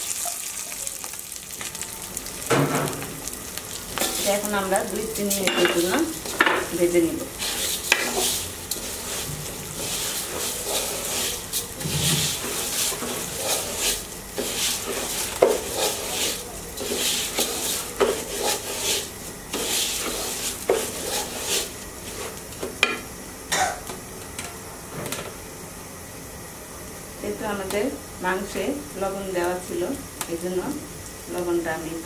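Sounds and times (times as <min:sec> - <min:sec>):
light sizzle: 0:00.0 - 0:32.0
spoon scraping a pot: 0:05.2 - 0:22.4.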